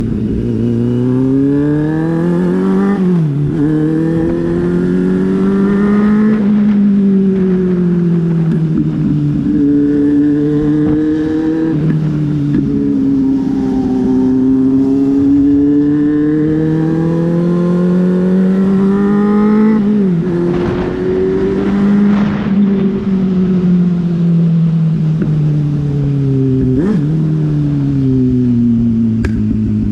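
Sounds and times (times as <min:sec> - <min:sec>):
motorcycle engine revving under load: 0:00.0 - 0:29.9.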